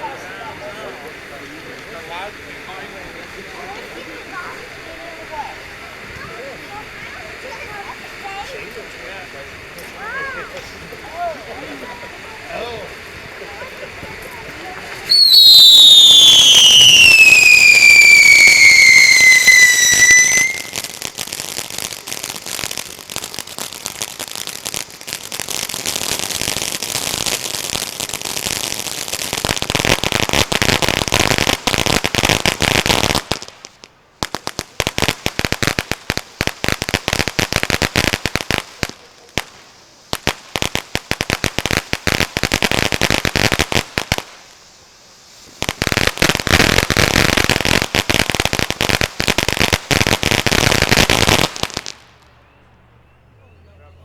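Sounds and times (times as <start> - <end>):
firework crackling: 0.0 - 53.2
firework screaming whistle: 9.8 - 33.3.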